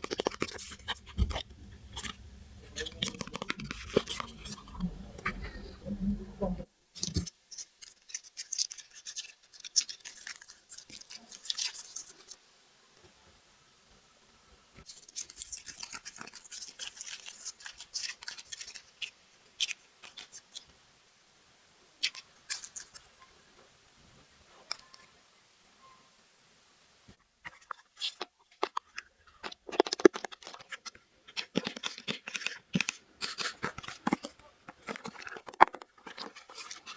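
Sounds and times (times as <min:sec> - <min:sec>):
plastic packaging rustling: 0:00.0 - 0:06.0, 0:28.6 - 0:36.9.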